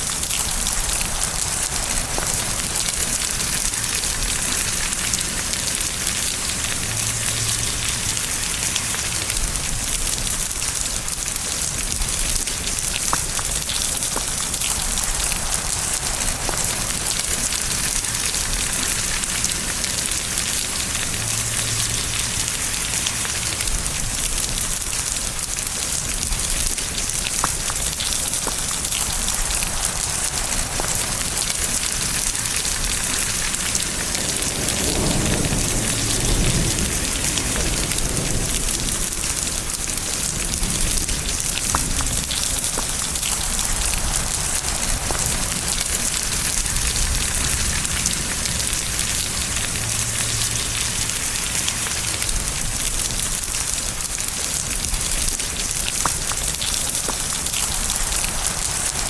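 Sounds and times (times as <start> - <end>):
low rumble of thunder: 0.0 - 5.0, 9.3 - 19.9, 23.6 - 50.8
heavy rain: 0.0 - 59.0.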